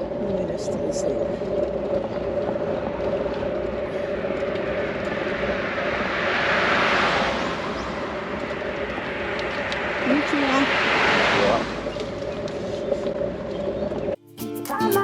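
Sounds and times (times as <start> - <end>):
steady mechanical hum: 0.0 - 11.0
vehicle passing by: 0.0 - 14.2.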